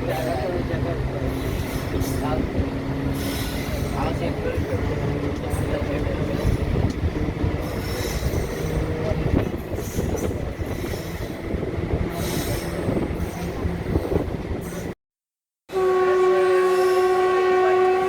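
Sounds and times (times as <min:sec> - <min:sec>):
train wheels rumbling and clattering: 0:00.0 - 0:15.0
train wheel squeals: 0:01.2 - 0:02.4, 0:03.0 - 0:04.2, 0:07.6 - 0:11.5, 0:12.1 - 0:14.9.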